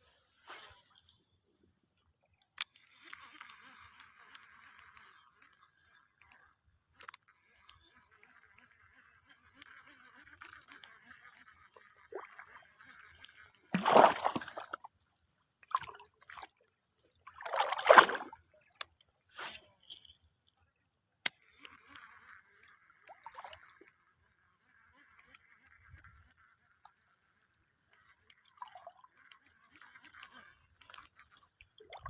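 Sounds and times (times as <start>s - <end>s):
water splashing: 13.7s - 14.9s, 17.2s - 18.4s.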